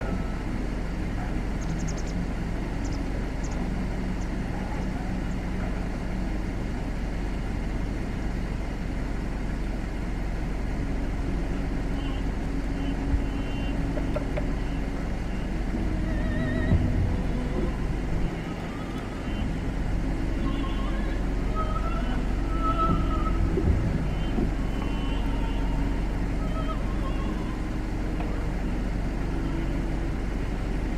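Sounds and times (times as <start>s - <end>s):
distant engine hum: 0.0s - 30.9s
strong wind buffeting microphone: 11.2s - 30.9s.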